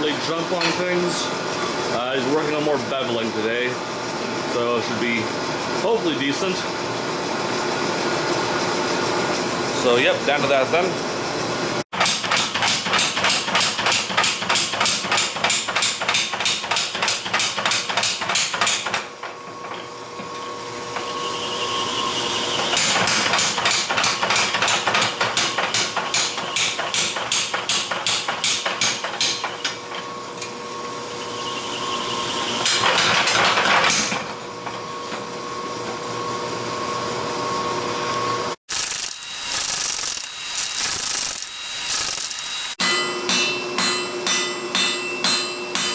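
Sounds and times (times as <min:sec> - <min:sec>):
hammer striking blade on anvil: 0:22.8 - 0:29.6, 0:42.4 - 0:45.9.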